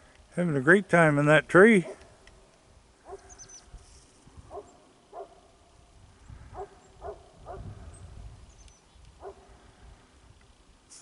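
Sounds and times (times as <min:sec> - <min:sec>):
animal barking: 0:03.0 - 0:03.4, 0:04.5 - 0:05.4, 0:06.5 - 0:07.6, 0:09.2 - 0:09.5
faint bird chirps: 0:03.1 - 0:03.7, 0:07.9 - 0:09.0.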